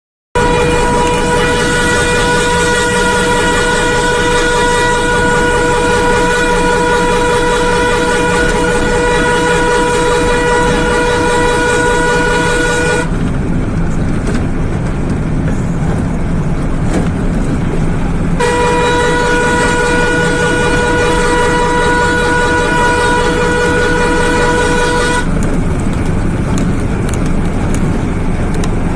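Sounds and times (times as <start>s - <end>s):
truck horn: 0.4s - 13.3s, 16.8s - 26.0s
truck engine and road noise: 0.4s - 28.9s.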